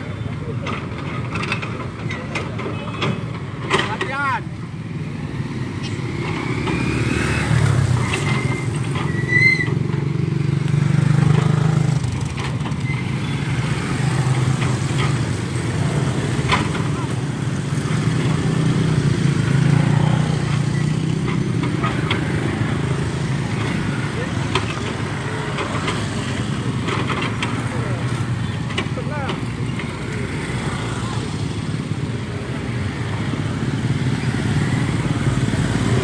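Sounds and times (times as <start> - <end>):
heavy vehicle engine running: 0.0 - 36.0
brief high squeal: 8.5 - 9.8.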